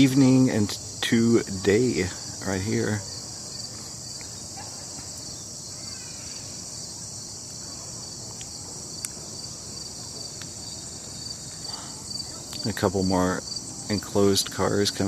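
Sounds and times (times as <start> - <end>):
crickets and insects trilling: 0.0 - 15.0.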